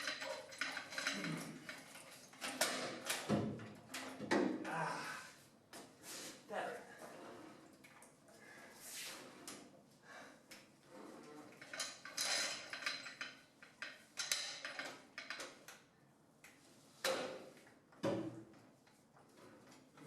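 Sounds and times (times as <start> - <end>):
metal tools clanking: 0.0 - 3.2, 11.5 - 15.5.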